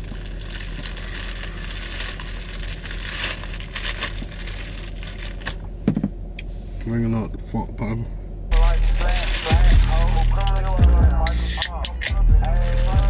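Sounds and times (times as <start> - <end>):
packaging crinkling and rustling: 0.0 - 5.6, 8.5 - 11.0, 12.5 - 13.0.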